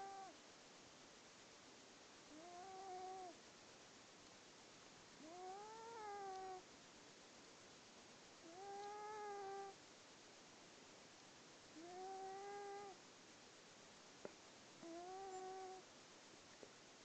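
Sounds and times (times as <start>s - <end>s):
cat snoring with whistling whine: 2.3s - 3.4s, 5.2s - 6.6s, 8.4s - 9.8s, 11.8s - 13.0s, 14.8s - 15.8s.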